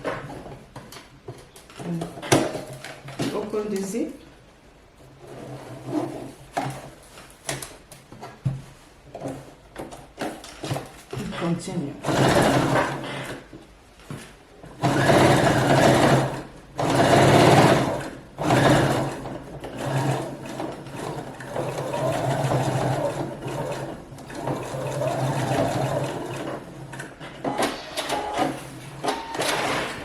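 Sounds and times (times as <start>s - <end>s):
sewing machine stitching: 12.0s - 13.4s, 14.6s - 27.4s.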